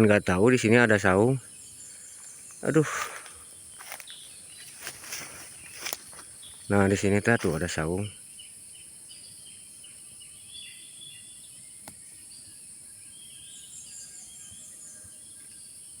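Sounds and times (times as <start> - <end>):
birds chirping: 0.0 - 16.0
insects droning: 0.0 - 16.0.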